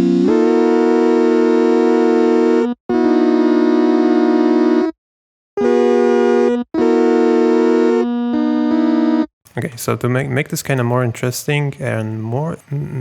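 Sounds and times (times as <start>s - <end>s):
buzzy organ-like keyboard chords: 0.0s - 5.0s, 5.6s - 10.2s.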